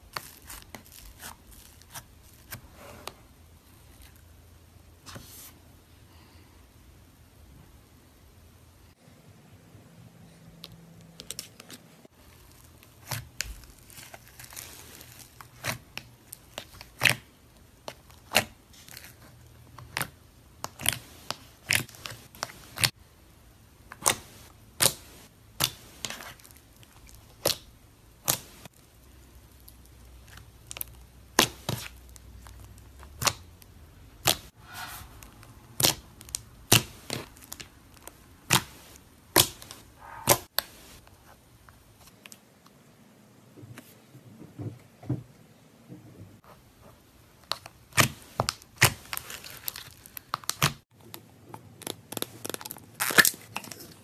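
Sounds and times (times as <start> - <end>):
slime crackles: 0.0 - 2.7, 11.2 - 17.3, 23.9 - 41.0, 47.4 - 50.8, 51.6 - 54.0.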